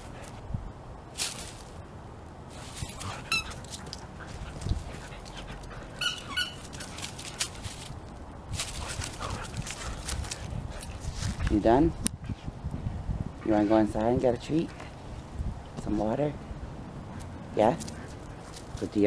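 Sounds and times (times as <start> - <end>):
paws scuffing and clicking: 2.6 - 8.0, 8.6 - 11.6, 17.1 - 18.9
dog squeaky whines: 6.0 - 6.7.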